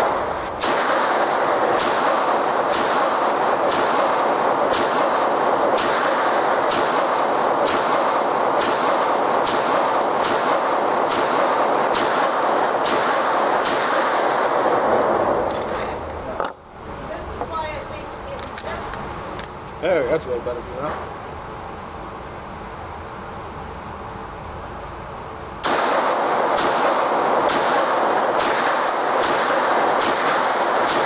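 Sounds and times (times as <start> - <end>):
pistol shots: 0.0 - 15.4, 25.6 - 31.0.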